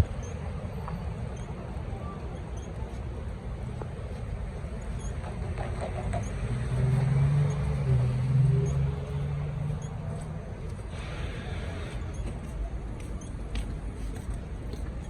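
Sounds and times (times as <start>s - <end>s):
street noise hum: 0.0s - 15.0s
vehicle passing: 5.6s - 12.1s.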